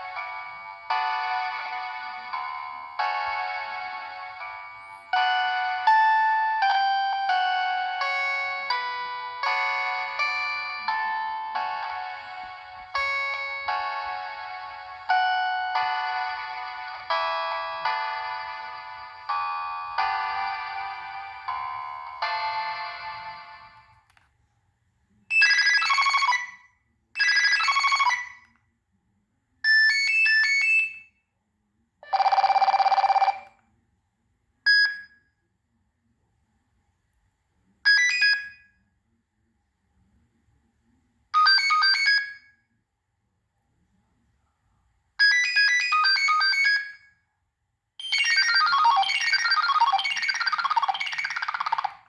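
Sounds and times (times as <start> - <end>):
phone ringtone melody bursts: 0.0 - 23.9, 32.0 - 33.5, 48.0 - 52.0.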